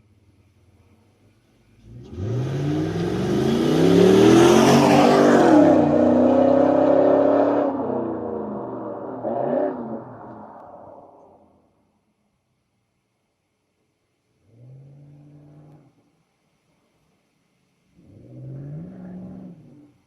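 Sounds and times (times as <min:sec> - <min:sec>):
vehicle engine accelerating: 0:01.8 - 0:11.4.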